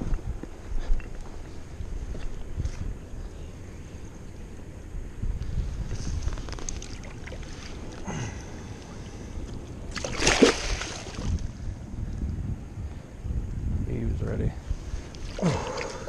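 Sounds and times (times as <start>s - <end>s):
wind rumbling on microphone: 0.0s - 16.0s.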